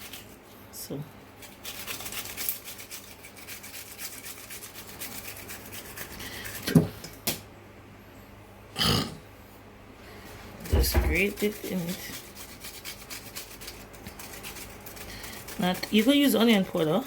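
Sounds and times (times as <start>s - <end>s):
onion rasping on grater: 1.4s - 6.8s, 10.6s - 17.0s.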